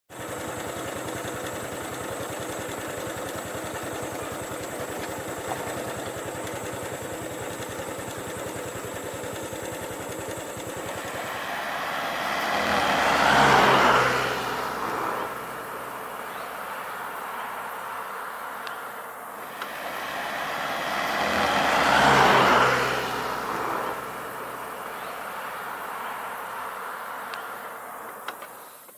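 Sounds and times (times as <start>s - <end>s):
engine idling at low revs: 0.1s - 13.1s, 14.5s - 22.4s, 23.1s - 28.9s
vehicle passing: 1.7s - 28.8s
high whine: 10.6s - 28.4s.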